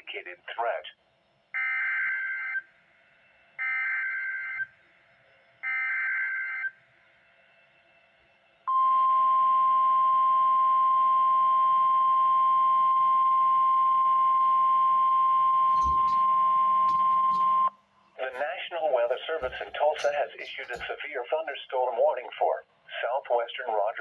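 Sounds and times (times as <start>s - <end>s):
steady warning alert tone: 15.7s - 21.0s.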